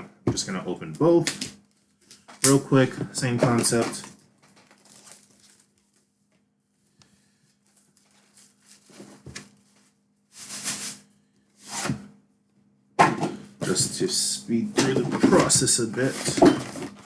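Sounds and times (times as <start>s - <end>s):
cardboard scraping swishes: 10.3s - 12.1s.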